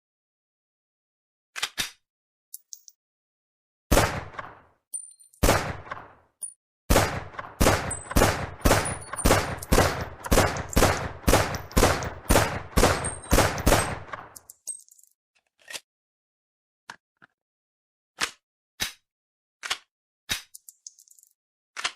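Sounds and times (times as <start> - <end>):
pistol gunshots: 3.9 - 4.7, 5.4 - 6.2, 6.9 - 14.4.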